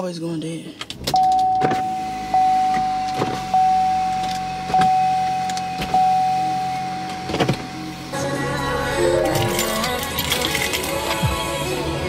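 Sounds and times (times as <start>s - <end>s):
car warning chime dinging: 1.1s - 10.0s.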